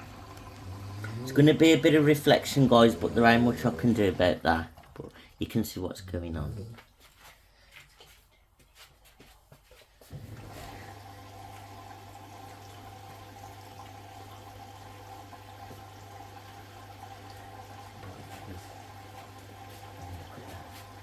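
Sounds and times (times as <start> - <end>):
water rushing into washing machine: 0.0 - 5.7, 10.0 - 21.0.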